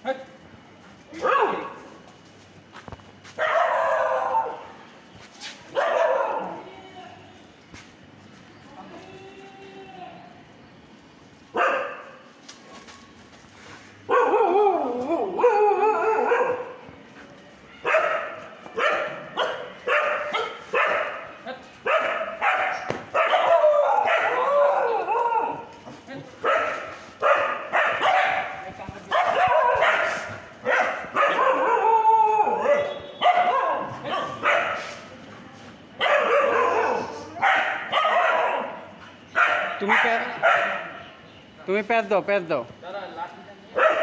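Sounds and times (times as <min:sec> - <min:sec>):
dog barking: 0:01.2 - 0:01.8, 0:03.4 - 0:04.7, 0:05.7 - 0:06.6, 0:11.6 - 0:12.2, 0:14.1 - 0:14.6, 0:15.4 - 0:16.8, 0:17.8 - 0:25.6, 0:26.4 - 0:31.9, 0:32.6 - 0:35.0, 0:36.0 - 0:41.0, 0:43.8 - 0:44.0
dog howling: 0:14.1 - 0:16.6, 0:23.3 - 0:25.7, 0:31.2 - 0:32.9.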